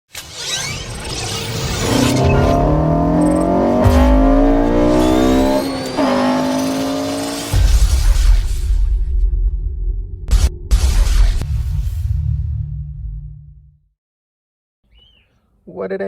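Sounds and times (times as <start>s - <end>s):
gear upshift: 0.3s - 7.5s
car engine revving: 0.7s - 8.4s.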